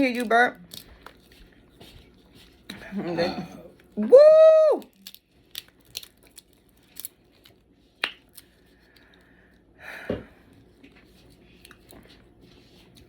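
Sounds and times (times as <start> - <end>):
crab shell cracking and snapping: 4.8 - 9.2.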